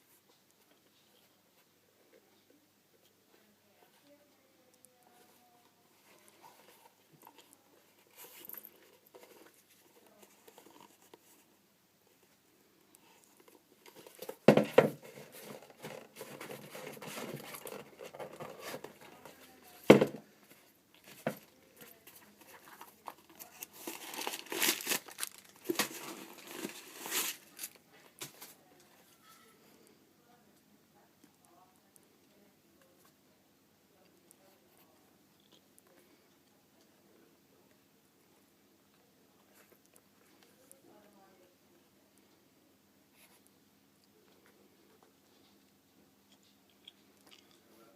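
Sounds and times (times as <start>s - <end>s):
paper crinkling and tearing: 22.5s - 28.3s.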